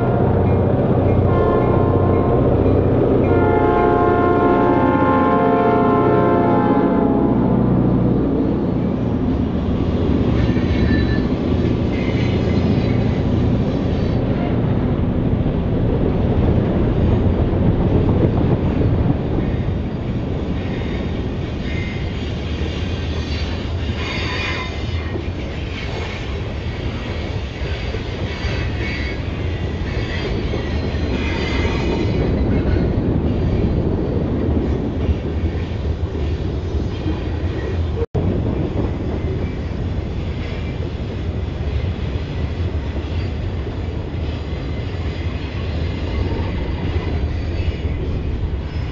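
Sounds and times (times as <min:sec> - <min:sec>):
diesel locomotives working hard: 0:00.0 - 0:48.9
high wheel squeal: 0:10.4 - 0:13.2.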